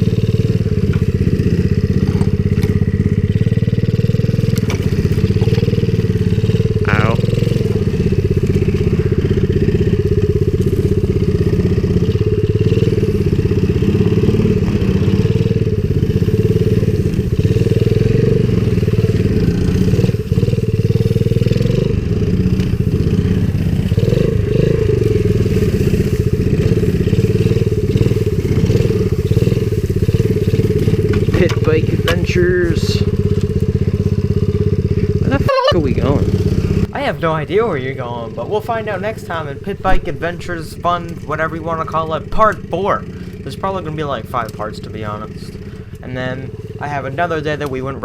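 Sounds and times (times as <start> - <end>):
pit bike engine revving: 0.0 - 48.0.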